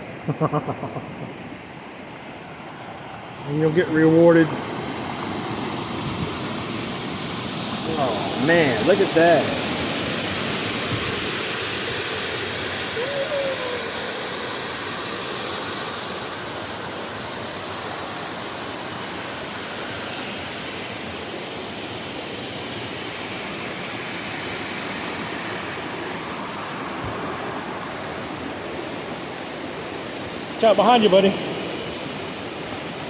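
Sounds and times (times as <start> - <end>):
waterfall rushing: 1.1 - 33.0.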